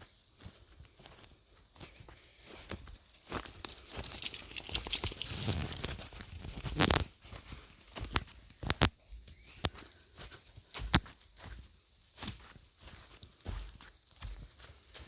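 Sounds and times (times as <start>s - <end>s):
crunching footsteps: 3.4s - 8.2s.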